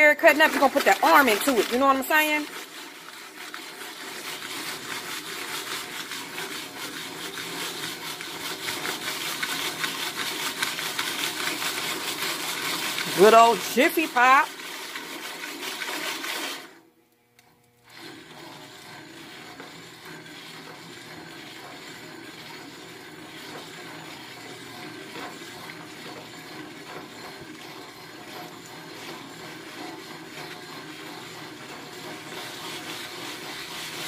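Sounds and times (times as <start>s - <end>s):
foil pan rattling on stove: 0.0s - 2.8s.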